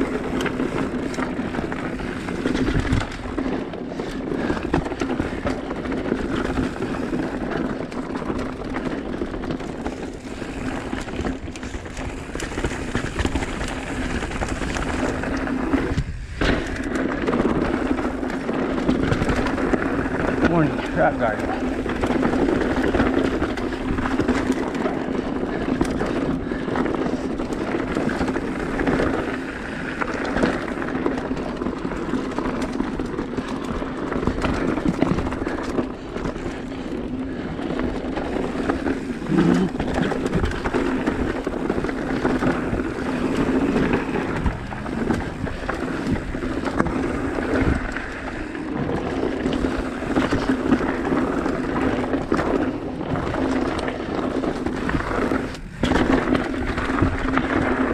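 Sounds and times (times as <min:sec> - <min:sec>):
bike rattling: 0:00.0 - 0:57.9
bike tyres crunching on rock: 0:00.0 - 0:57.9
wind buffeting microphone: 0:09.2 - 0:17.0, 0:34.2 - 0:57.9.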